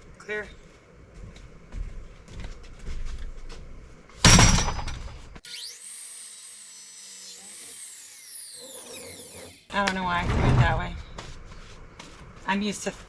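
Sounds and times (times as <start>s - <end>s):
high falling tones: 5.5s - 9.7s.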